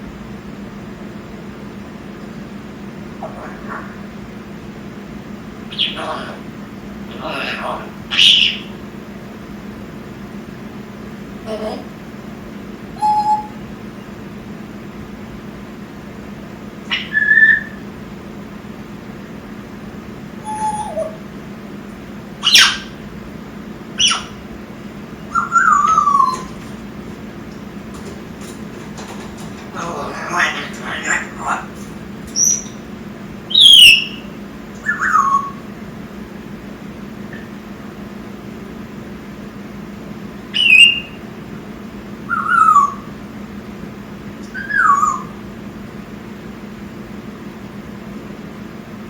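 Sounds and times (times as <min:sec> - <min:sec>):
parrot squawks: 0:03.2 - 0:04.1, 0:05.7 - 0:06.5, 0:07.1 - 0:08.8, 0:13.0 - 0:13.6, 0:16.9 - 0:17.8, 0:20.4 - 0:21.2, 0:22.4 - 0:23.0, 0:24.0 - 0:24.4, 0:25.3 - 0:26.6, 0:29.8 - 0:31.8, 0:33.5 - 0:35.6, 0:42.3 - 0:43.1, 0:44.5 - 0:45.4
parrot whistle falling in pitch: 0:13.0 - 0:13.6.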